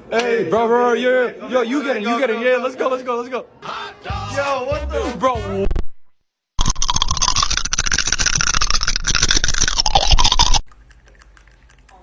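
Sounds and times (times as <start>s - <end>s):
harsh scraping of rapid clicks: 6.6s - 12.0s.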